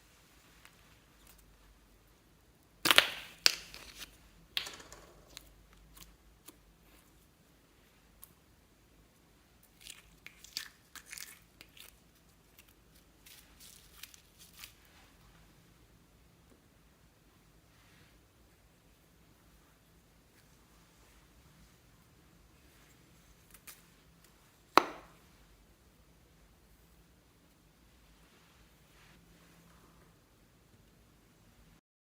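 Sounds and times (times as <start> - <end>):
material crackling as it is crushed: 9.7 - 14.8.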